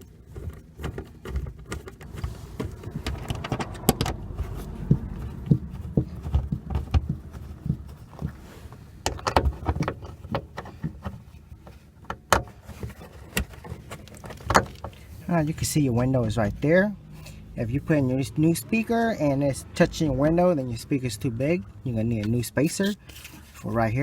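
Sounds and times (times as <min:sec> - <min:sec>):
clicks and taps of hard parts: 0:00.0 - 0:08.4, 0:09.0 - 0:15.1
low steady rumble: 0:00.0 - 0:24.0.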